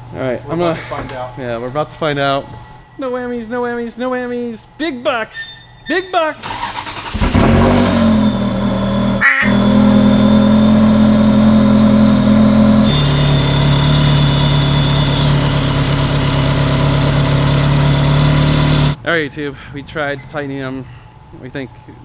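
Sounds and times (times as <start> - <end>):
car engine idling: 6.4 - 19.0.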